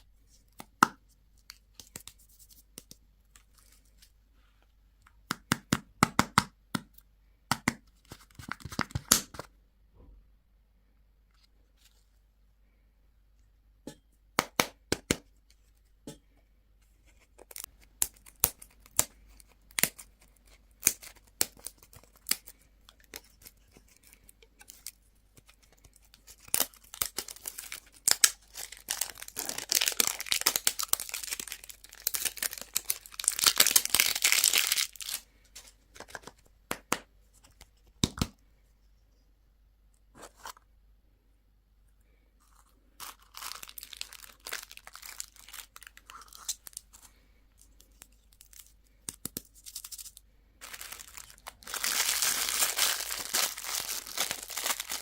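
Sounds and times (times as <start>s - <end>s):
candy wrappers crinkling: 17.3s - 36.3s, 42.4s - 55.0s
wrapper tearing: 26.1s - 35.2s, 43.0s - 46.8s, 49.4s - 55.0s.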